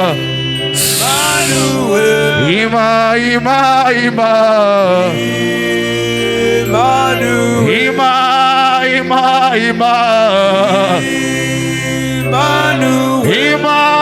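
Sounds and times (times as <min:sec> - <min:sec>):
man singing gliding notes: 0:00.0 - 0:14.0
sustained keyboard chords: 0:00.0 - 0:14.0.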